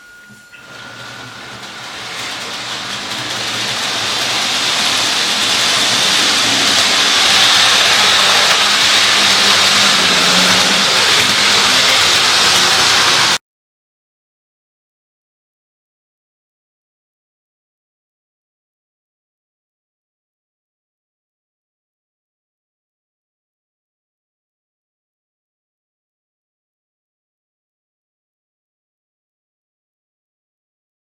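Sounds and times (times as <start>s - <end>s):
model train whirring on track: 0.0s - 13.4s.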